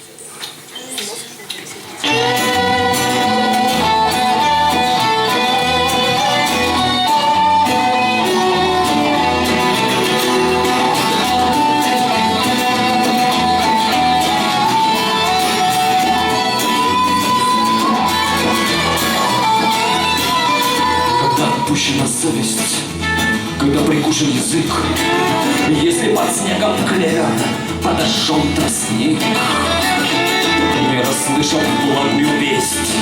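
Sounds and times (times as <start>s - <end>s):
guitar: 0.0s - 33.0s
violin-like melody: 2.0s - 21.5s, 29.3s - 32.9s.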